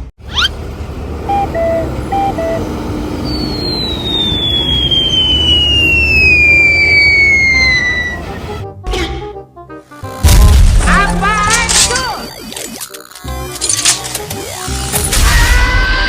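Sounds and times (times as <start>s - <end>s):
vehicle engine rumble: 0.0s - 8.8s
whistle falling in pitch: 3.2s - 8.2s.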